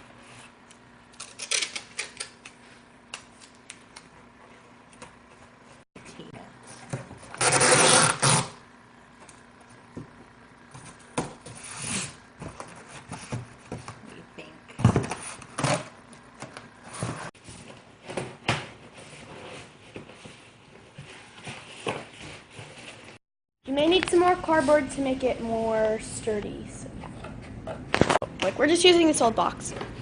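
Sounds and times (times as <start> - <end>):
tape tearing screech: 7.4 - 8.6.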